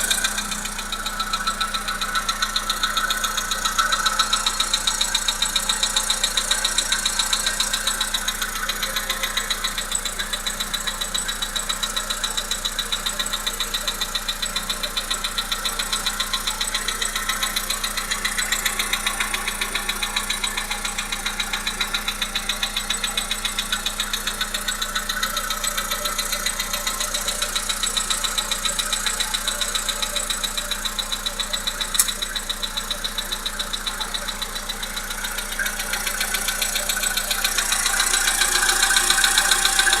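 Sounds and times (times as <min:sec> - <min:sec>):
car engine idling with knock: 0:00.0 - 0:40.0
sharp click: 0:31.9 - 0:32.9.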